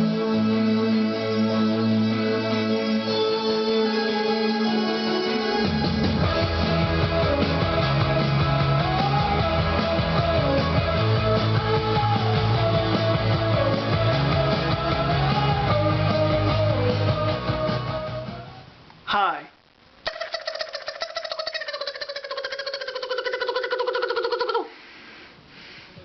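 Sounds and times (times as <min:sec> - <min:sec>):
rock music with guitar: 0:05.5 - 0:18.4.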